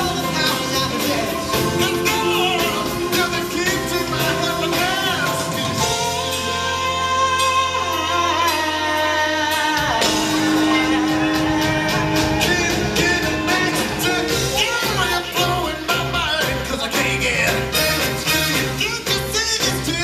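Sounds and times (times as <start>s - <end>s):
live pop band playing: 0.0s - 20.0s.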